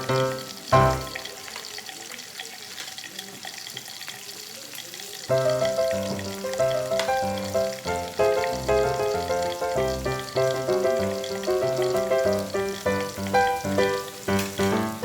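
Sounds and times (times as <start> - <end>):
background music: 0.0 - 1.3, 5.3 - 15.0
meat sizzling on a grill: 0.0 - 15.0.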